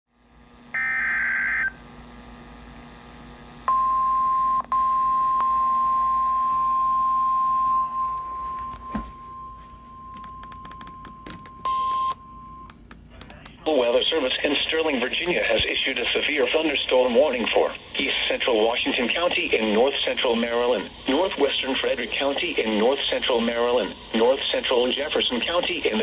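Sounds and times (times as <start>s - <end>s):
high alarm tone: 0.7s - 1.8s, 3.7s - 12.7s
screeching digital data burst: 0.8s - 1.8s
clicks: 10.1s - 13.7s, 20.6s - 23.0s.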